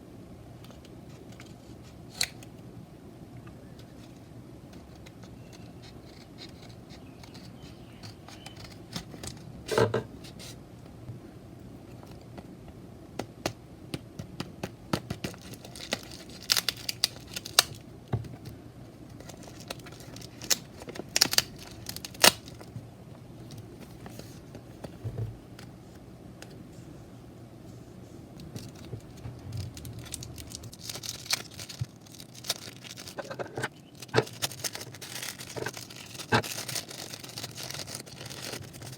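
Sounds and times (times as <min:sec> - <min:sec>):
packaging crinkling and tearing: 0:15.1 - 0:17.8, 0:19.1 - 0:22.8, 0:28.4 - 0:38.9.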